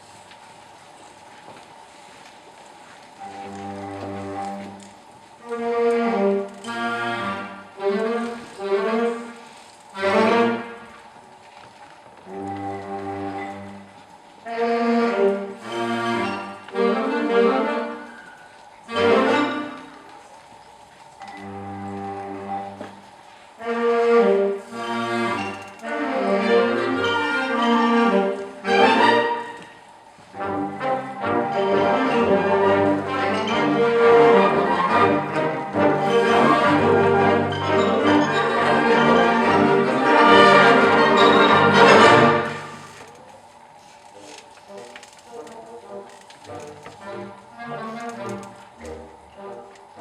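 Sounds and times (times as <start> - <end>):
orchestral music with strings and brass: 3.2 - 11.0, 12.3 - 20.2, 21.3 - 43.0, 44.7 - 50.0.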